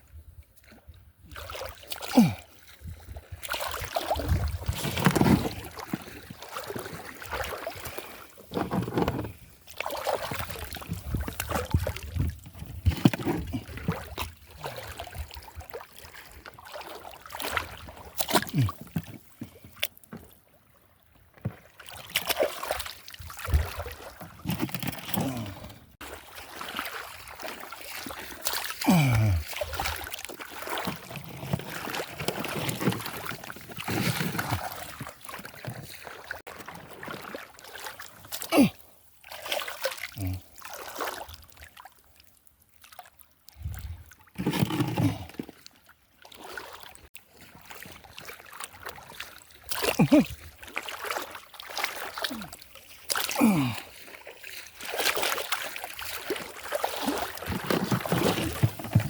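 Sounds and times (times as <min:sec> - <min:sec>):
water splashing and sloshing: 0:00.0 - 0:59.0.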